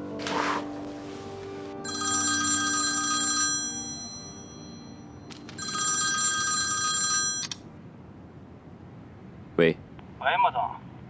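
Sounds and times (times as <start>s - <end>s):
soft music: 0.0s - 5.7s
electronic telephone ring: 1.9s - 7.6s.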